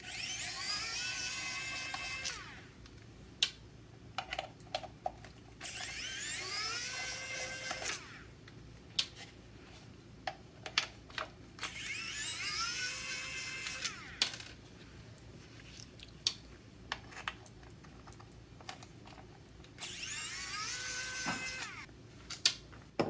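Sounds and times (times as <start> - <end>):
electric screwdriver motor whining: 0.0 - 2.7, 5.6 - 8.3, 11.6 - 14.4, 19.8 - 21.9.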